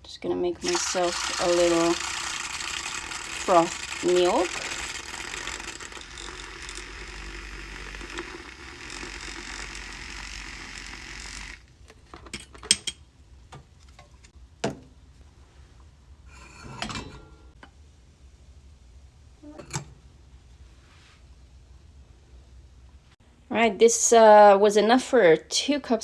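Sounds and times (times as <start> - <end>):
electric milk frother whirring: 0.6 - 11.7.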